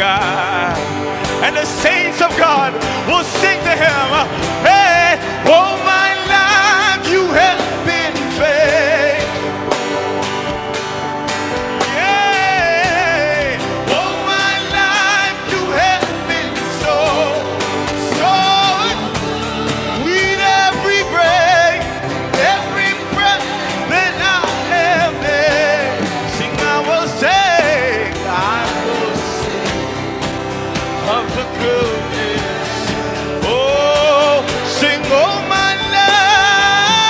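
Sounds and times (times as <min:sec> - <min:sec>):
person singing: 0:00.0 - 0:10.0, 0:11.8 - 0:37.0
gospel band playing: 0:00.0 - 0:37.0.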